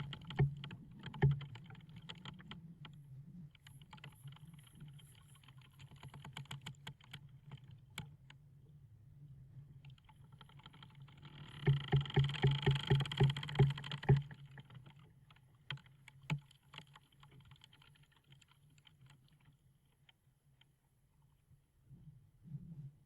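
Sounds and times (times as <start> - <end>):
wood ticking and cracking: 10.2 - 19.6
wooden timbers creaking: 10.4 - 15.0.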